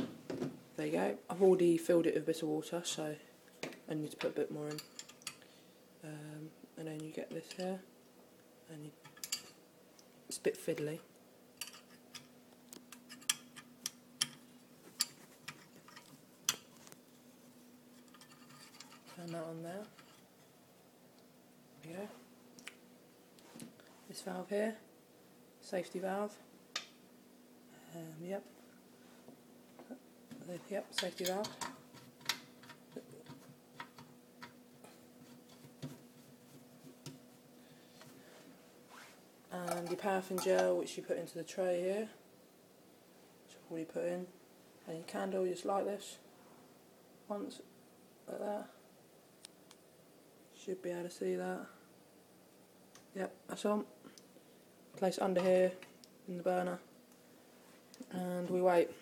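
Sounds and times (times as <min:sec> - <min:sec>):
faint steady hum: 0:00.0 - 0:59.0
small parts clicking and tapping: 0:31.0 - 0:34.6.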